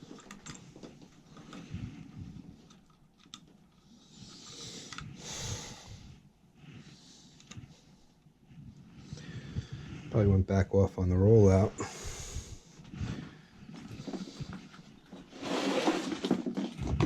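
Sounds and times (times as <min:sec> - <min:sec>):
faint clicks and handling noises: 0:00.0 - 0:05.2, 0:07.3 - 0:09.3.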